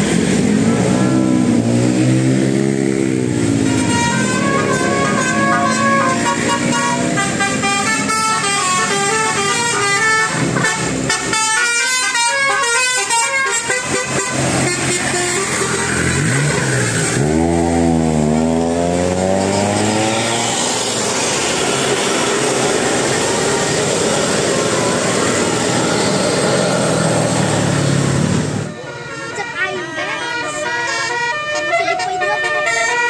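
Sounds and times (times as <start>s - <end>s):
traffic noise: 0.0s - 33.0s
bus multi-tone horn melody: 3.0s - 20.4s, 28.6s - 33.0s.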